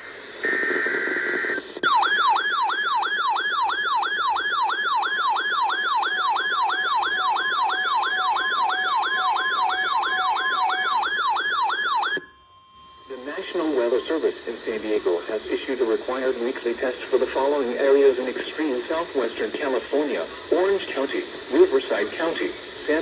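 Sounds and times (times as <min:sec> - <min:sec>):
falling electronic alert tone: 0:01.8 - 0:13.9.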